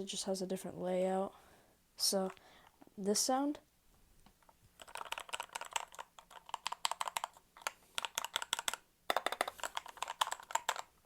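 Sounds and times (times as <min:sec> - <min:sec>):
keyboard typing clicks: 0:04.8 - 0:10.9.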